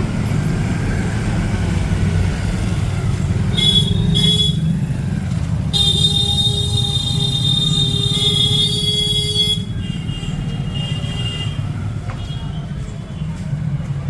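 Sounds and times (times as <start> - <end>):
street traffic: 0.0 - 14.0
vehicle horn: 3.5 - 4.7, 5.7 - 11.6.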